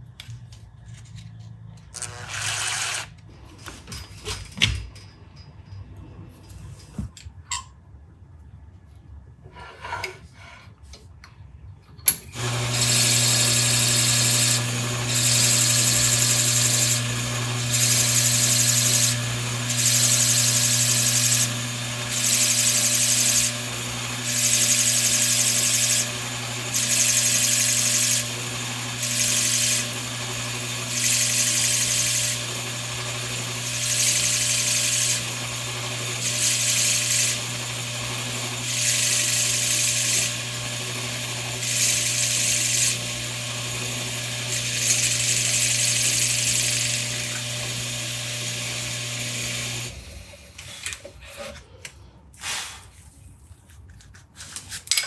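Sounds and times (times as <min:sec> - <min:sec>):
power tool humming: 0:12.4 - 0:50.2.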